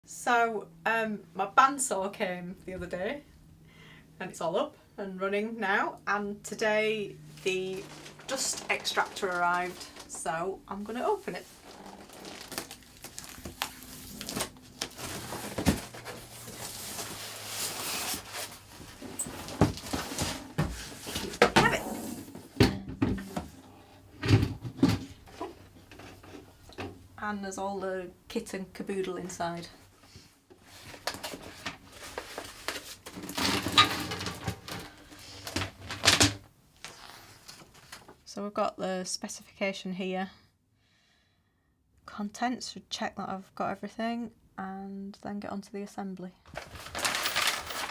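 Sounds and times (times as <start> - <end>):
rustling of packaging: 7.3 - 21.4, 30.6 - 36.2, 36.8 - 38.2, 46.5 - 47.9
cardboard box being opened: 11.5 - 21.4, 46.6 - 47.9.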